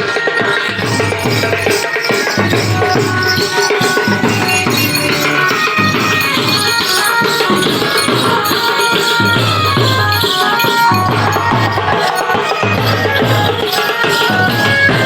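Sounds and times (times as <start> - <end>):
fast drum beat: 0.0 - 15.0
jingling percussion: 0.0 - 15.0
melody of held notes: 0.8 - 14.8.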